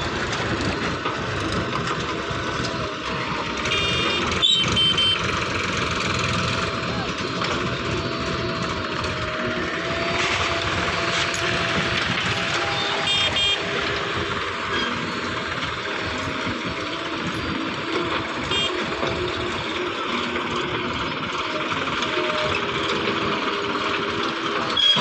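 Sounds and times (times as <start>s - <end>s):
backhoe loader running: 0.0s - 25.0s
short high beeps: 3.6s - 5.3s, 12.2s - 14.9s.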